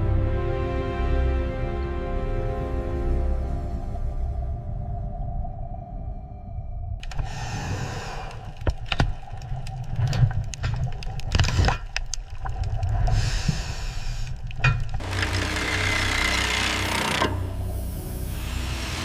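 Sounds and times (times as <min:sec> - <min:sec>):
machinery rumbling: 0:07.0 - 0:19.0
hiss: 0:07.1 - 0:08.5, 0:13.1 - 0:14.3, 0:17.5 - 0:19.0.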